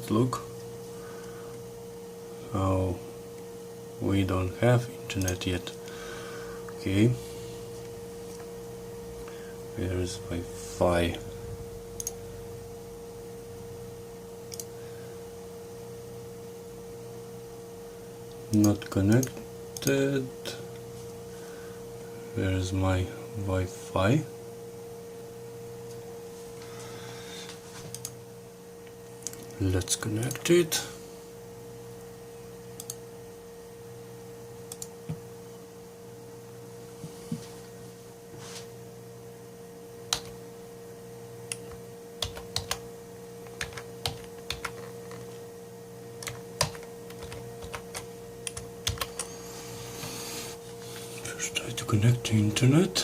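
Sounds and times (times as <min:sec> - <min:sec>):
steady electrical hum: 0:00.0 - 0:53.0
computer mouse clicks: 0:14.5 - 0:14.7, 0:27.9 - 0:28.2, 0:32.8 - 0:33.0, 0:34.7 - 0:34.9.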